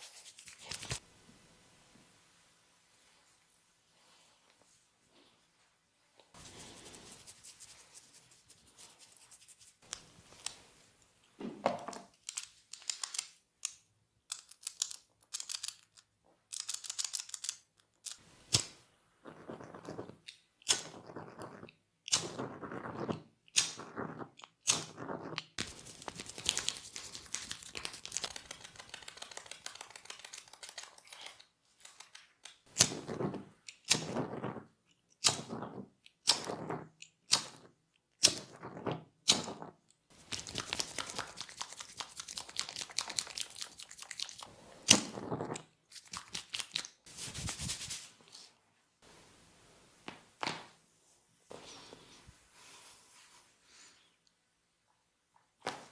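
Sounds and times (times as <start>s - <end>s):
hands rubbing hair and skin: 0.0s - 1.0s, 6.3s - 10.7s, 25.6s - 32.7s, 45.9s - 48.6s, 51.0s - 53.9s.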